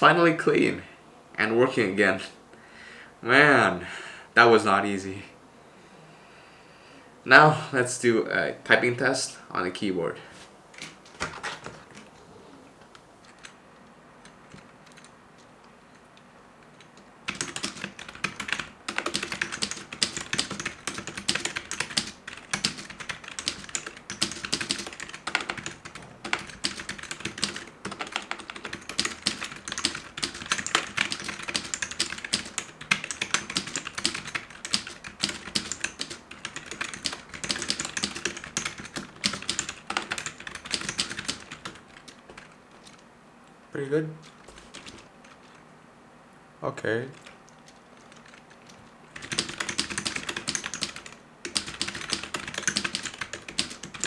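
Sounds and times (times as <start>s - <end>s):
fast typing on keyboard: 10.8s - 12.1s, 16.9s - 43.0s, 44.3s - 45.6s, 47.2s - 54.0s.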